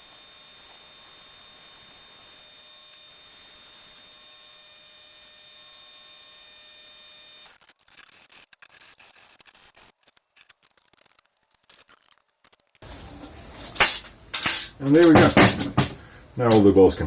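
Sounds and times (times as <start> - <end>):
electrical hum and hiss: 12.8 - 17.0.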